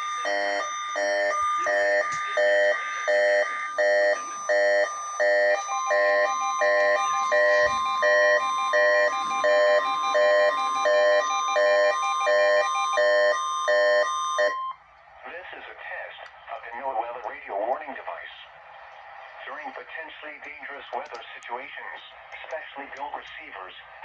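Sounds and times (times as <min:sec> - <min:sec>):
rapid pulsed alarm beeps: 0:00.0 - 0:14.8
steady warning alarm tone: 0:00.0 - 0:24.0.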